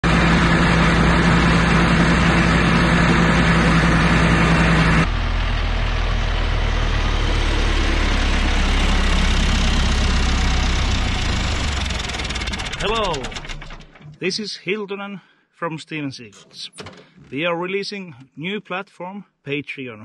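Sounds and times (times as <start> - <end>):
vehicle engine idling: 0.0 - 14.0
deeper engine noise: 0.0 - 14.4.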